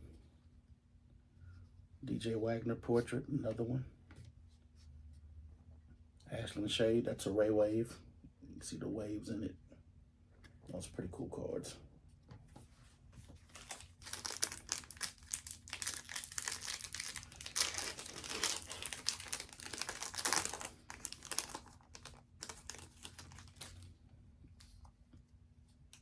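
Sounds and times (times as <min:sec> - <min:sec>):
foil wrapper crinkling: 0:13.4 - 0:23.9.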